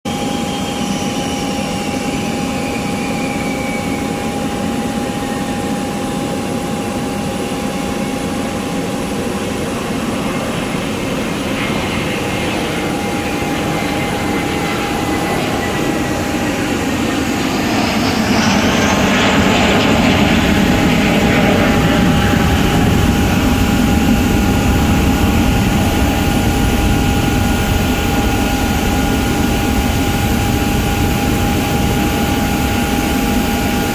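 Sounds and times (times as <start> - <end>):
airplane engine rumble and whine: 0.1 - 33.9.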